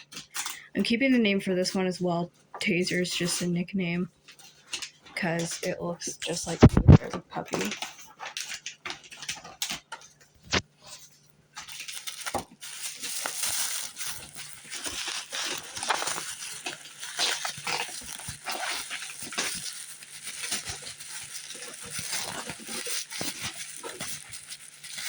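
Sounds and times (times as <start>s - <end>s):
wrapping crinkling: 4.1s - 25.0s
packaging clicks and taps: 11.6s - 25.0s.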